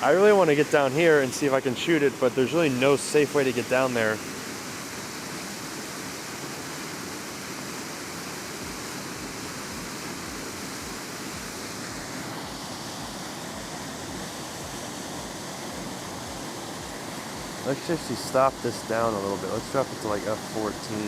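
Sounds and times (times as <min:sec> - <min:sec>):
waterfall roaring: 0:00.0 - 0:21.0.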